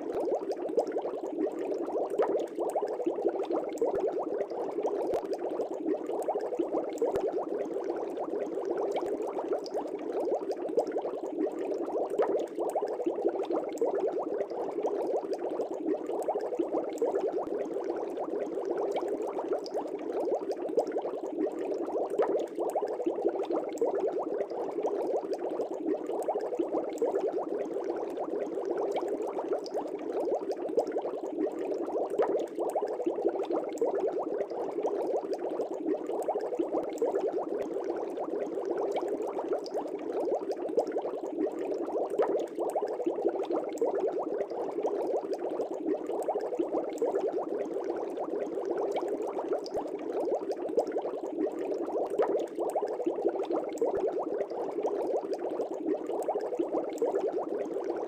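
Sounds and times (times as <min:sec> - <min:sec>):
air bubbles in fish tank: 0:00.0 - 0:58.0.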